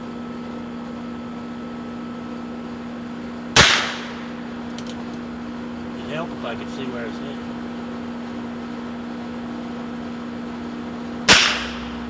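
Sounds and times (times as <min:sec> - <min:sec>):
gunshot: 0:03.6 - 0:04.3, 0:11.3 - 0:12.0.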